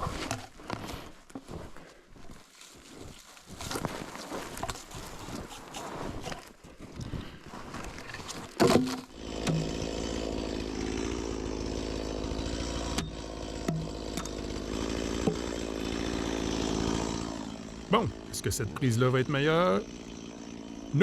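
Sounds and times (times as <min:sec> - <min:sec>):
chainsaw running: 0:02.7 - 0:06.1, 0:07.8 - 0:21.0.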